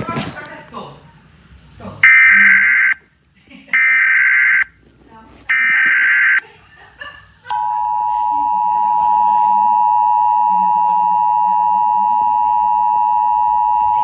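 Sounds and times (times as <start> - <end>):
loud steady dual tone: 1.5 - 4.8, 5.5 - 14.0
short beeps: 7.5 - 14.0.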